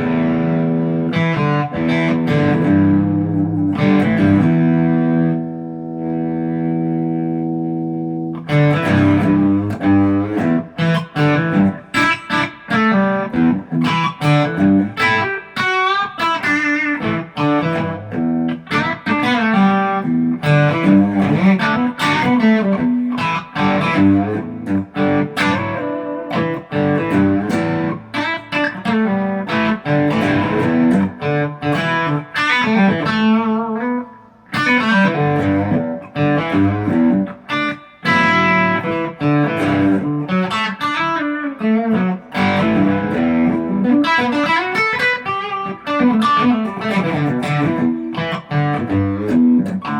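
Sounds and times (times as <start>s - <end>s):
electric guitar through an amp: 0.0s - 49.9s.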